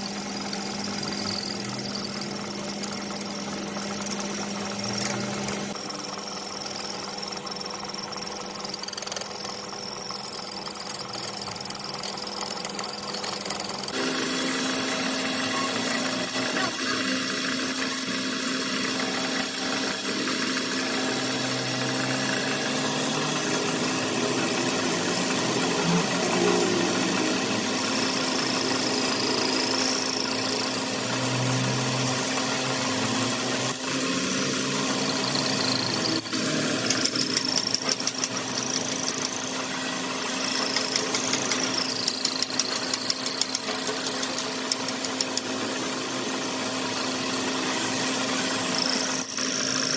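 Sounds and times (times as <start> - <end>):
rapid ticking: 0.0 - 14.0
high-pitched machine whines: 0.0 - 49.9.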